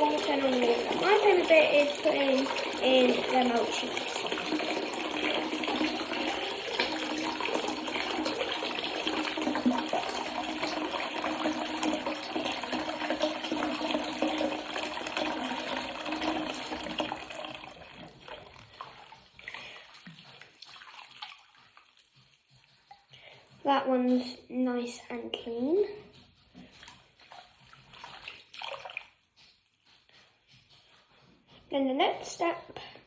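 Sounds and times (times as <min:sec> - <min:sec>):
tap water running into sink: 0:00.0 - 0:22.0
water splashing being stirred: 0:00.0 - 0:24.5, 0:25.4 - 0:32.5.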